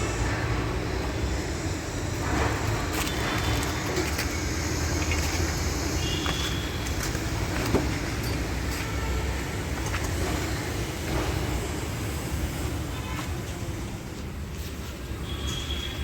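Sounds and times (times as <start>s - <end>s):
motor vehicle rumble: 0.0s - 12.7s.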